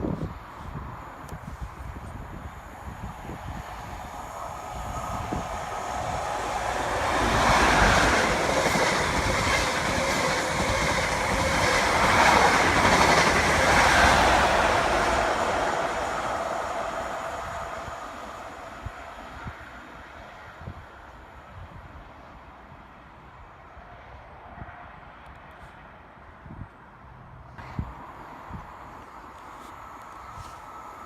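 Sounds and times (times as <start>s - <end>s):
train wheels on rails: 0.0s - 21.2s, 27.6s - 31.0s.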